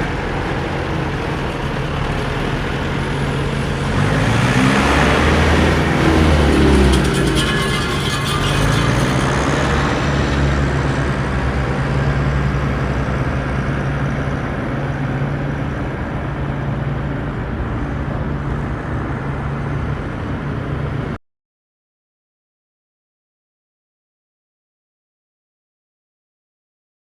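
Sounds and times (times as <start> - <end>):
tractor engine running: 0.0 - 21.1.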